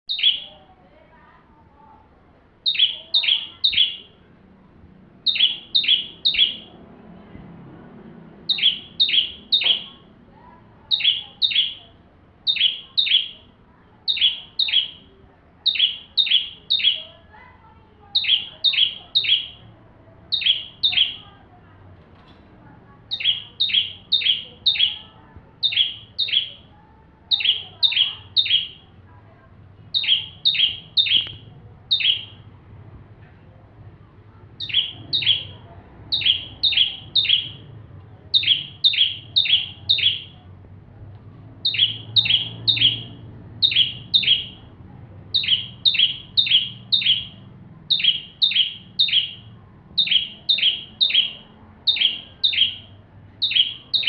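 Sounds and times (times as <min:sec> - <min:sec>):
bird chip notes: 0:00.1 - 0:00.7, 0:02.6 - 0:04.2, 0:05.2 - 0:06.8, 0:08.5 - 0:19.7, 0:20.3 - 0:21.5, 0:23.1 - 0:28.9, 0:29.8 - 0:32.4, 0:34.6 - 0:40.4, 0:41.6 - 0:54.0.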